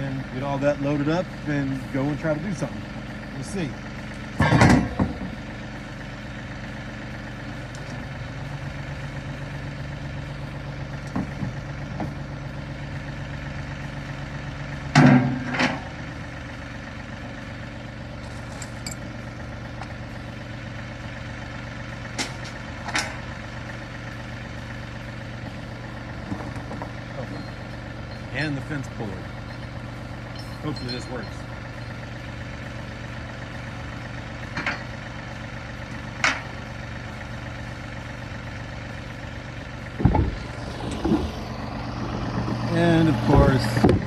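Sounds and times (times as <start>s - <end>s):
vehicle engine idling: 0.0s - 44.0s
tools knocking and clanking: 4.3s - 5.4s, 11.0s - 12.2s, 14.9s - 16.0s, 26.2s - 32.0s, 34.5s - 34.9s, 36.2s - 36.5s, 40.0s - 44.0s.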